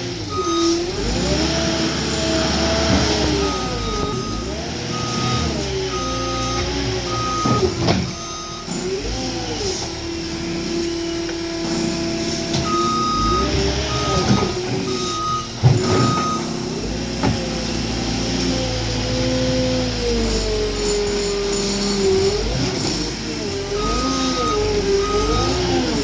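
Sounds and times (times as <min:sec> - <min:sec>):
diesel engine revving: 0:00.0 - 0:26.0
backup alarm beeping: 0:03.3 - 0:08.6, 0:12.6 - 0:16.5, 0:23.8 - 0:26.0.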